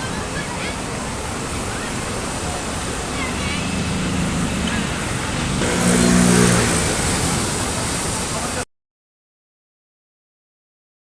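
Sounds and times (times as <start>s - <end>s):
sea waves washing on shore: 0.0s - 8.6s
low pitched drone: 2.4s - 8.2s.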